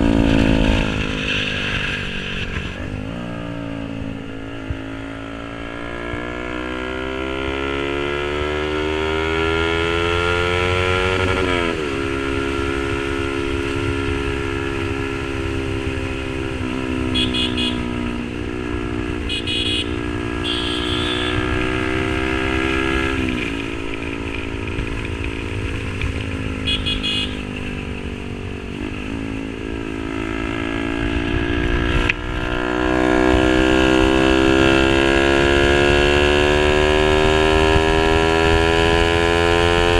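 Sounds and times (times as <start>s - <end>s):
motorcycle engine accelerating: 0.0s - 39.9s
horn toots: 17.0s - 18.2s, 19.2s - 22.0s, 26.6s - 27.7s.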